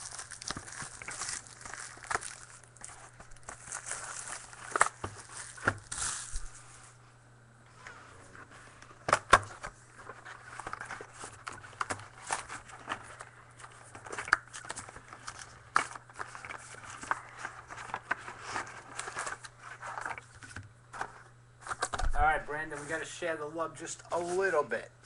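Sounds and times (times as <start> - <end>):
packaging crinkling and rustling: 0.0 - 6.7, 9.0 - 23.0.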